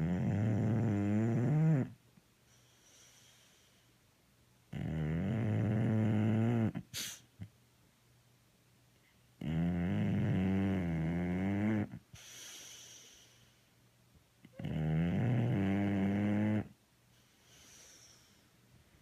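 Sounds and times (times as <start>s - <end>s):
dog snoring: 0.0s - 2.0s, 4.7s - 7.1s, 9.4s - 13.3s, 14.5s - 16.8s
dog hissing breath: 6.9s - 7.4s, 12.1s - 13.6s, 17.1s - 18.6s.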